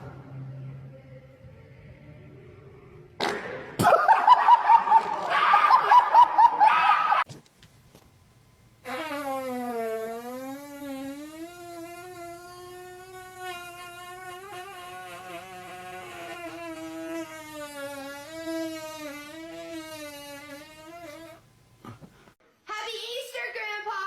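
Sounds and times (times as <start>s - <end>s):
long buzzing fart: 8.8s - 22.2s.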